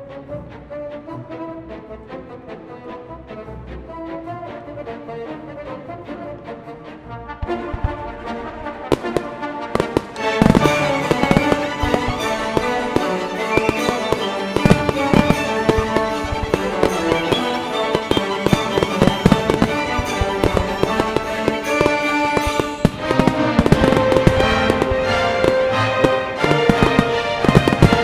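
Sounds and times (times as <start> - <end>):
orchestral music: 0.0 - 28.0
fireworks banging and crackling: 7.4 - 28.0.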